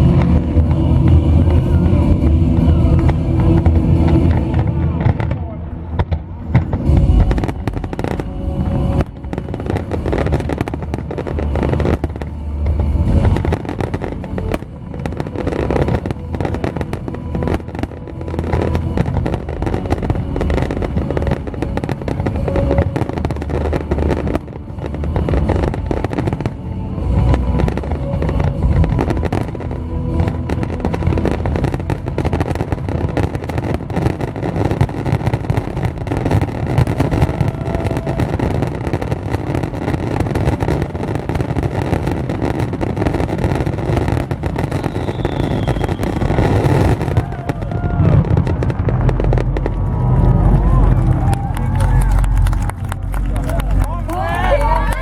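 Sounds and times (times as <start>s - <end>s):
fireworks booming and crackling: 0.0s - 55.0s.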